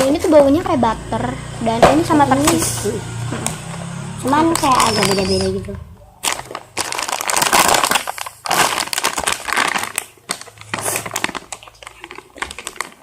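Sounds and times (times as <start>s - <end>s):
plastic packaging crinkling: 3.4s - 13.0s.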